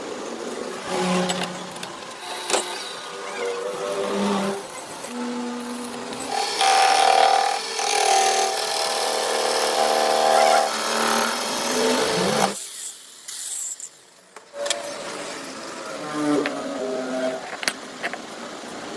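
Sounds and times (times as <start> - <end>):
machine tool whining: 0.7 - 12.6.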